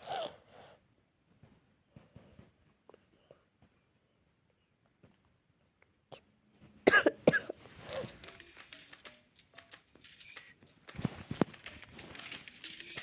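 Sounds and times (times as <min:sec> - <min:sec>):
person coughing: 0:06.9 - 0:08.1.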